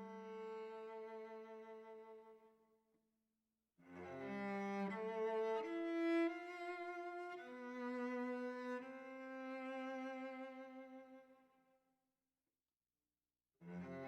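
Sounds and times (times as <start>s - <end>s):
slow bowed strings music: 0.0s - 2.4s, 3.8s - 11.4s, 13.6s - 14.0s.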